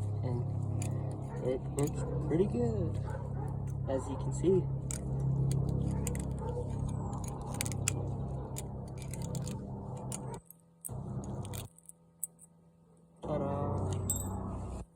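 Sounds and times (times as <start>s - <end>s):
steady low hum: 0.0s - 14.9s
metal tool clicks and scrapes: 0.7s - 2.1s, 4.8s - 12.6s.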